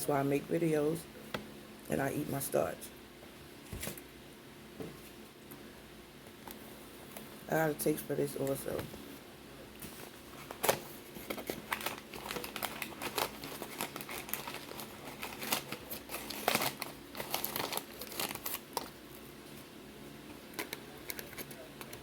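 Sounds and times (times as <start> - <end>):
packaging crinkling: 10.4 - 19.2.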